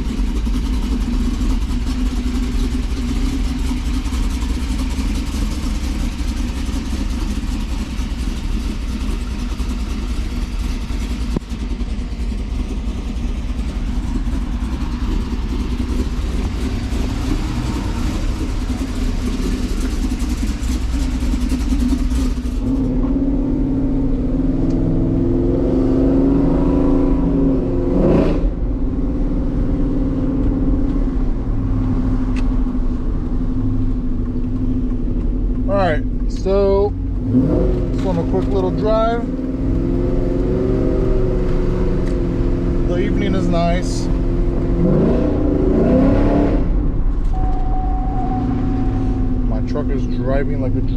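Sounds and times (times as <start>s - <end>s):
pickup truck engine running: 0.0s - 24.2s
rushing noise: 44.6s - 50.8s.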